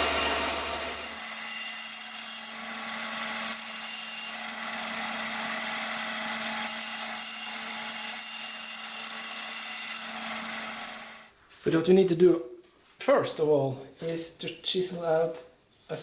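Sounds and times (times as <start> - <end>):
power tool motor running: 0.0 - 11.3.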